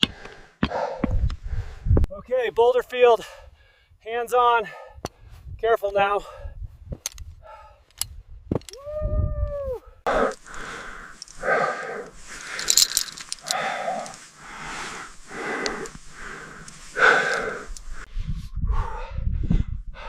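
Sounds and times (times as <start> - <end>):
heavy labored breathing: 0.0 - 2.1, 3.2 - 4.0, 4.6 - 5.5, 6.2 - 8.0, 10.0 - 20.0.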